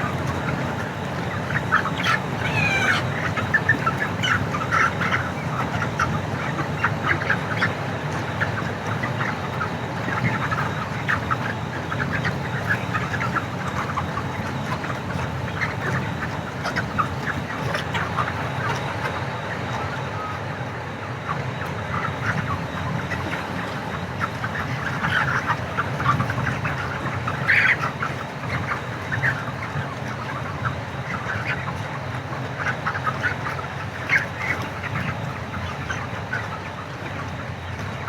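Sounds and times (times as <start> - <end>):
chickens calling: 0.0 - 38.0.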